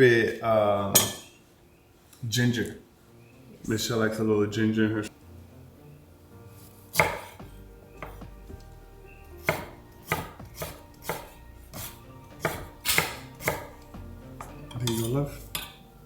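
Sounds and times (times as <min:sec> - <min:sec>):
knife chopping on cutting board: 0:06.9 - 0:08.4, 0:09.4 - 0:15.7.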